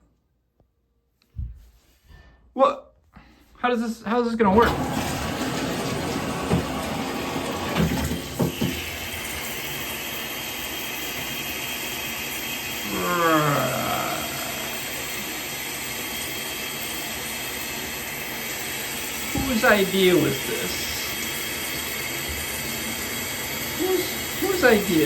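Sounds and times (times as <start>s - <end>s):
shower spraying water: 4.6s - 25.0s
groan-like vocal sound: 12.8s - 14.7s.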